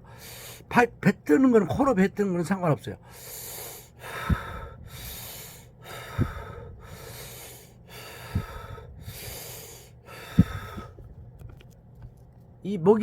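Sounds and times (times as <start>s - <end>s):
man breathing forcefully: 0.0s - 0.7s, 3.0s - 11.2s
low breath puffs: 3.1s - 11.2s.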